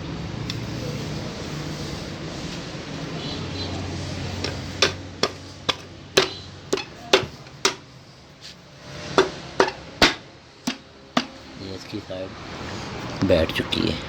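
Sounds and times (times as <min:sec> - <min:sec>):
sharp knocks on engine cover: 0:04.4 - 0:07.9, 0:09.1 - 0:11.5.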